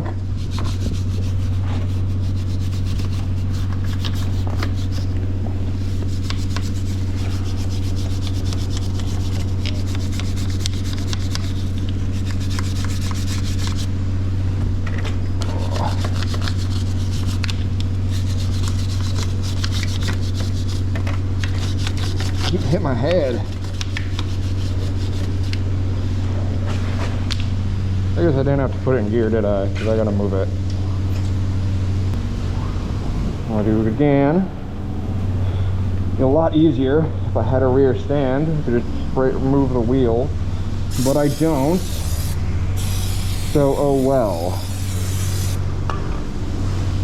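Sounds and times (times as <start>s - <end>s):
steady low hum: 0.0s - 47.0s
brush scrubbing a chain: 0.3s - 13.9s, 15.6s - 25.6s, 40.9s - 45.6s.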